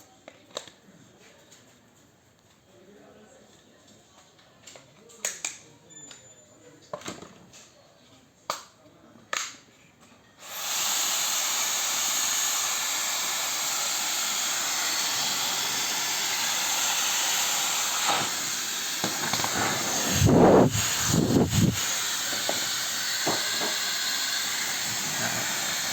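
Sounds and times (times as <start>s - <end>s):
hair dryer blowing: 10.4s - 25.9s.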